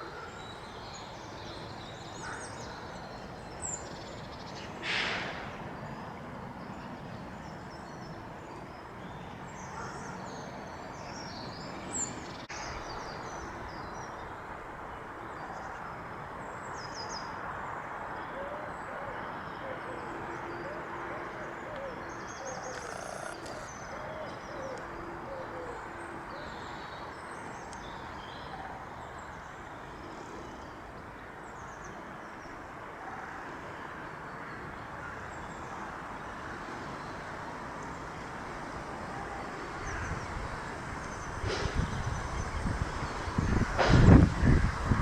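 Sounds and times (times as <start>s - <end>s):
birds calling: 21.7s - 26.9s
low cooing: 21.8s - 25.8s.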